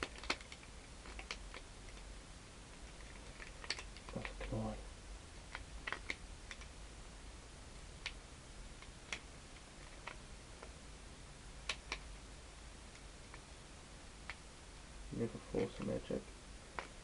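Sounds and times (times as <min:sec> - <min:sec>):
plastic puzzle clicking: 0:00.0 - 0:02.0, 0:03.0 - 0:04.6.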